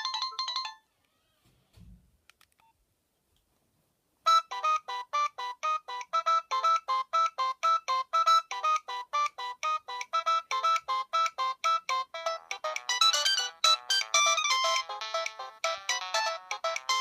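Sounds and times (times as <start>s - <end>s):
synthesized phone ringtone: 0.0s - 0.8s, 4.3s - 17.0s.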